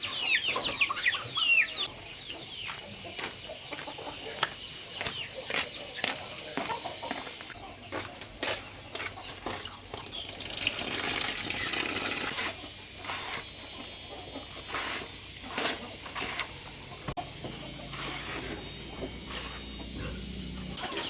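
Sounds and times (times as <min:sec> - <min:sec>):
chickens clucking: 0:00.0 - 0:21.0
splashing water: 0:10.0 - 0:12.3.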